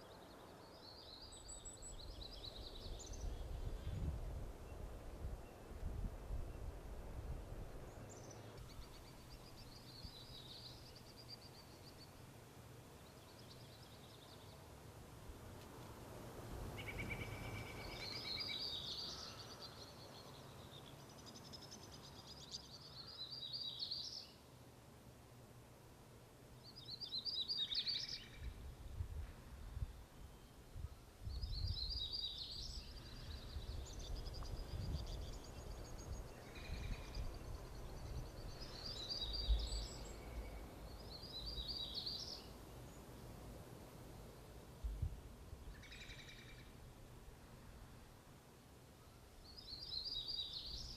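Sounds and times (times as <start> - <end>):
songbirds trilling: 16.8 - 24.5, 31.4 - 43.5.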